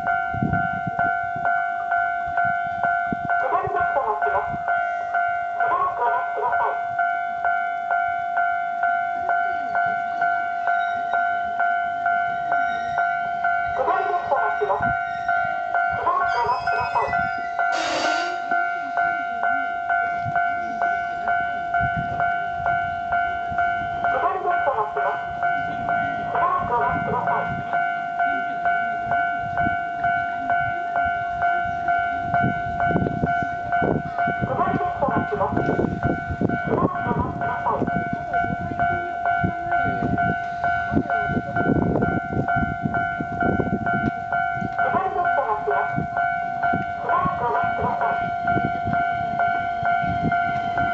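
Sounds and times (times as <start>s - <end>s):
level-crossing electronic bell: 0.0s - 50.9s
recorded voice warning: 3.4s - 4.6s, 5.6s - 6.8s, 13.8s - 14.9s, 24.1s - 25.3s, 25.9s - 27.8s, 34.4s - 35.7s, 36.7s - 38.0s, 44.8s - 46.0s, 47.0s - 48.2s.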